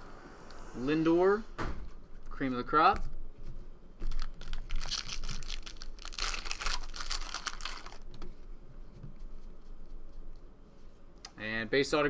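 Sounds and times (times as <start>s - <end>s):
card pack crinkling and rustling: 4.0s - 8.3s.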